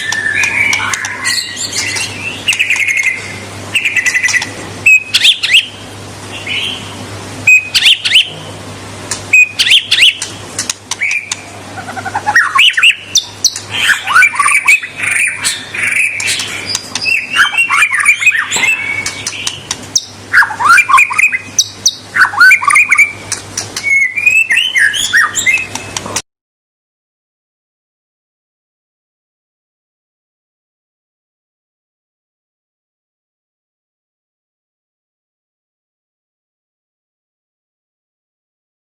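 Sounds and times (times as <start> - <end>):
songbird singing: 0.0 - 8.6, 9.3 - 26.2.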